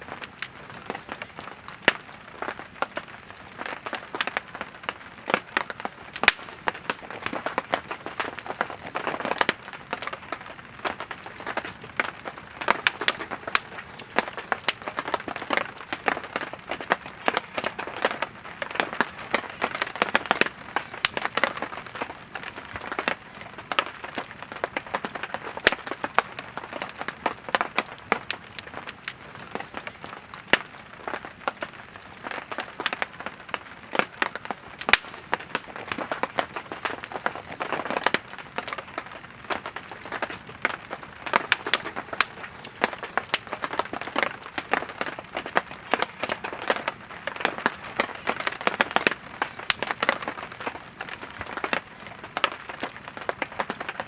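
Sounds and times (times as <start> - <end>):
campfire crackling and popping: 0.0 - 54.0.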